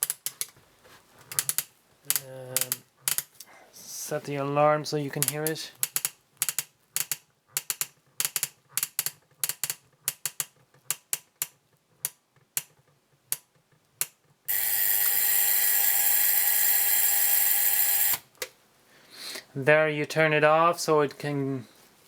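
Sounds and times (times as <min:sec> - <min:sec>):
electric alarm buzzer: 0:14.5 - 0:18.2
flip clock clicking: 0:14.5 - 0:18.2.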